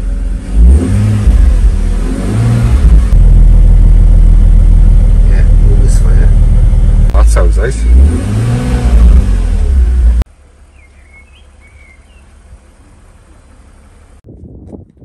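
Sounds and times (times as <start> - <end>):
car engine revving: 0.0 - 14.2
faint bird chirps: 10.6 - 12.8.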